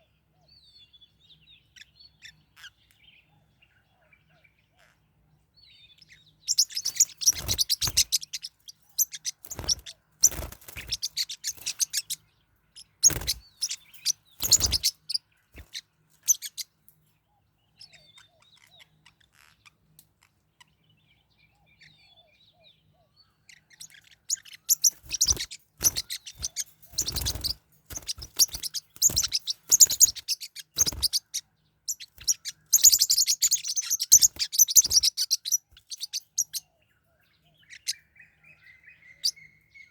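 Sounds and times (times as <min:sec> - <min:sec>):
parrotlets chirping harshly: 0:06.5 - 0:16.7, 0:23.5 - 0:36.6.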